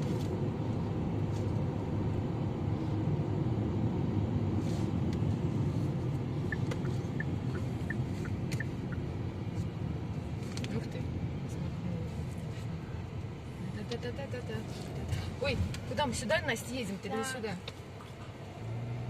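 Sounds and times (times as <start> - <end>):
engine and tyres rumbling: 0.0 - 19.0.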